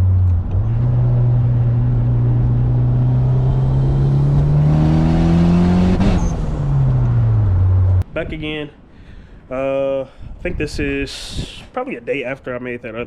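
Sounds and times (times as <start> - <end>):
car engine revving: 0.0 - 8.0.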